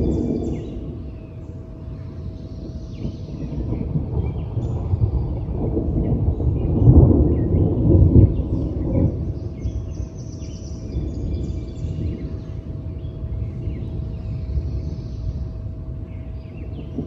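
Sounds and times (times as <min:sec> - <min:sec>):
birds chirping: 0:00.0 - 0:17.0
rolling thunder: 0:00.0 - 0:17.0.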